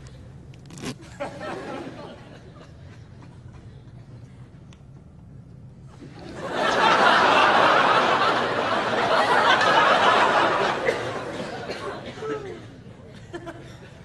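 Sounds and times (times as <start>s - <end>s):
audience laughing: 1.2s - 3.7s, 6.1s - 14.0s.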